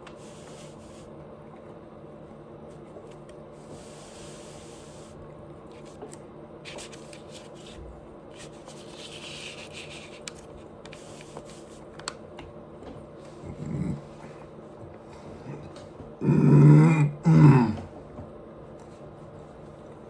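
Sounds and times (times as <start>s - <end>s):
faint steady hum: 0.0s - 20.0s
low throat sound: 13.4s - 14.2s, 15.4s - 17.9s.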